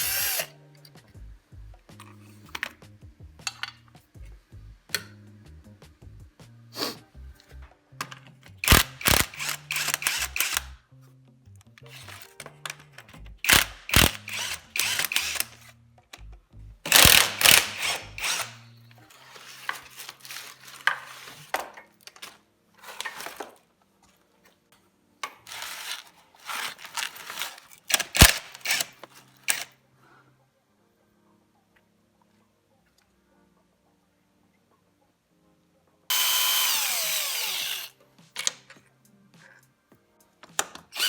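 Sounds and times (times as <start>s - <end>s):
quiet background music: 0.0s - 41.0s
hand tools clicking and rattling: 3.4s - 4.3s, 8.0s - 10.8s, 11.8s - 16.3s, 16.9s - 23.6s, 25.2s - 29.7s.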